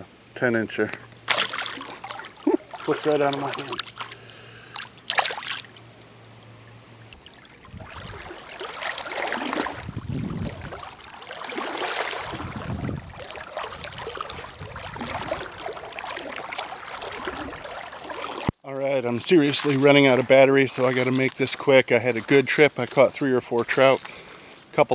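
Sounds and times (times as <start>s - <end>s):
river water splashing and rushing: 1.3s - 5.8s, 7.1s - 18.5s, 19.4s - 21.6s.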